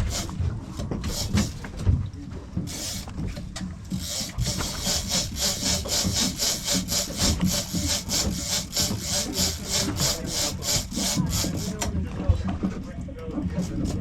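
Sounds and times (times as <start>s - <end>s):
fishing reel cranking: 0.0s - 0.4s, 1.0s - 1.7s, 2.6s - 11.9s.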